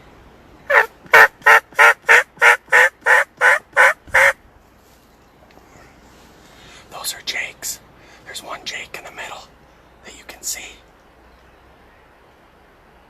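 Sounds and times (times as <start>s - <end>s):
turkey yelping: 0.7s - 4.4s.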